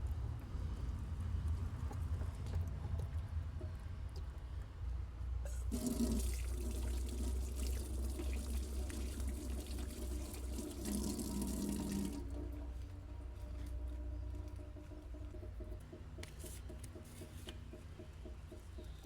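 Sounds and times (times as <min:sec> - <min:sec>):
water pouring: 0:05.5 - 0:12.5.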